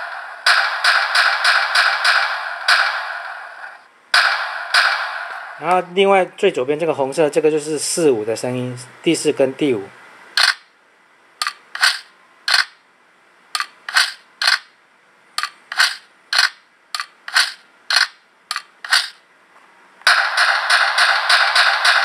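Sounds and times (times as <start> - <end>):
sharp cracks from small speaker: 10.4 - 10.7, 11.4 - 12.8, 13.6 - 14.7, 15.4 - 19.2
rapid rattling from speaker: 11.4 - 12.8, 13.6 - 14.7, 15.4 - 19.2, 20.0 - 22.0.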